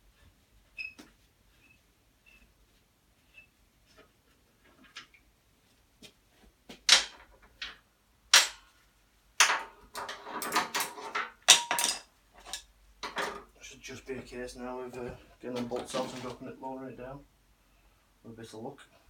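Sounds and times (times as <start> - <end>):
metallic clinking and rattling: 6.9 - 8.6, 9.4 - 13.5.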